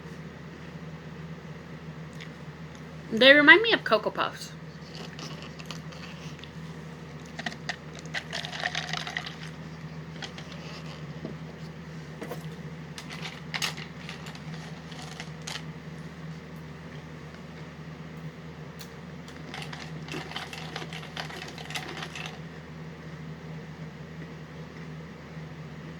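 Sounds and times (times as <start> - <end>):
steady low hum: 0.0 - 25.9
cereal puffs being chewed: 4.7 - 11.2, 12.3 - 15.7, 19.3 - 22.4.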